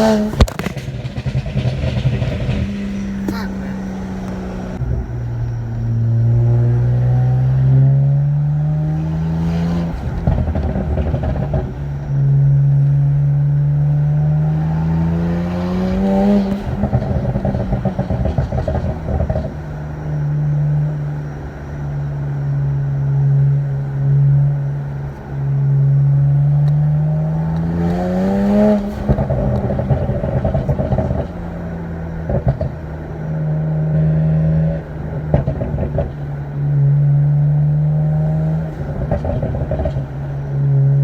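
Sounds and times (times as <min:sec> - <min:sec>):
exhaust crackles and pops: 0:00.0 - 0:05.2, 0:09.2 - 0:20.0, 0:26.0 - 0:33.0, 0:34.6 - 0:37.4, 0:38.2 - 0:41.0
car engine revving: 0:00.0 - 0:41.0.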